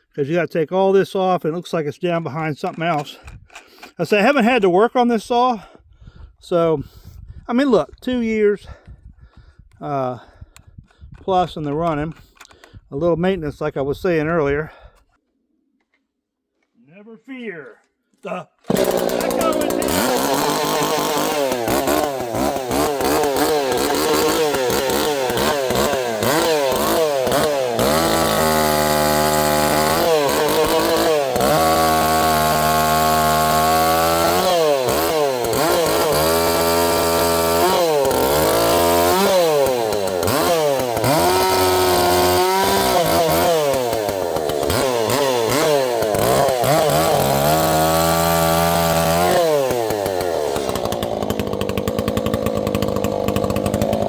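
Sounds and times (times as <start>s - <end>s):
chainsaw revving: 18.6s - 54.0s.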